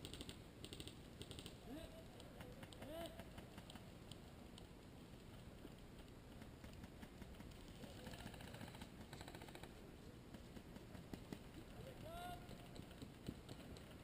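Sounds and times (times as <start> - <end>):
faint clicks: 2.2 - 11.7
faint rapid ticks: 2.4 - 11.7.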